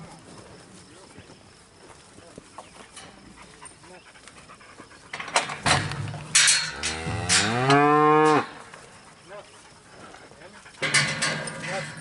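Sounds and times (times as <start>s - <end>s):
cow mooing: 6.6s - 8.6s.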